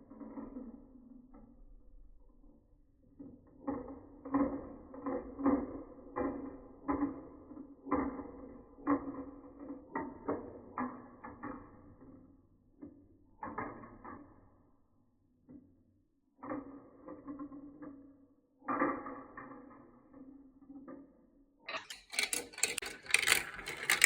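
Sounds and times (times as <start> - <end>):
marbles clattering down plastic track: 21.6 - 24.0.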